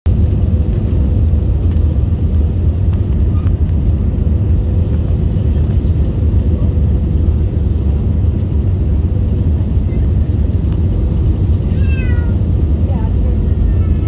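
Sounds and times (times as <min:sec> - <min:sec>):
aircraft cabin engine rumble: 0:00.0 - 0:14.0.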